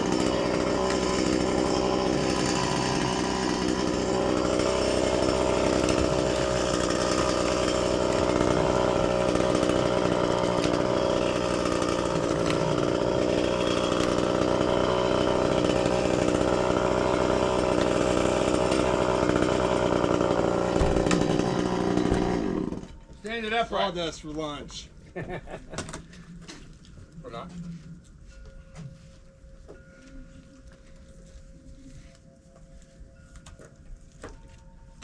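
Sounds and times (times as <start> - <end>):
chainsaw cutting wood: 0.0 - 24.8.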